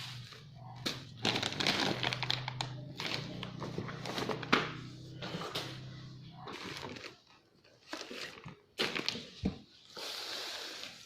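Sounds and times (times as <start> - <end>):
packaging crackling and rustling: 1.1 - 4.5, 6.5 - 9.4.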